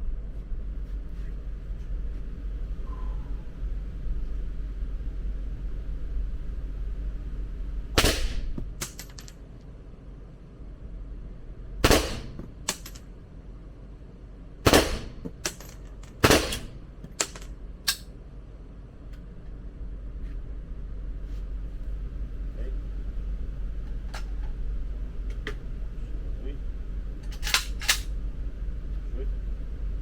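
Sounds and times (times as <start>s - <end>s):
loud gunshots: 8.0s - 8.6s, 11.8s - 12.7s, 14.6s - 15.2s, 16.2s - 16.8s.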